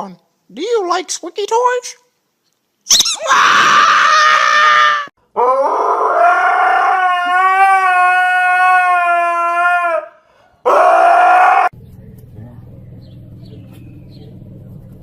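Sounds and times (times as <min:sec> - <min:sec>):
dog howling: 0:03.2 - 0:11.8.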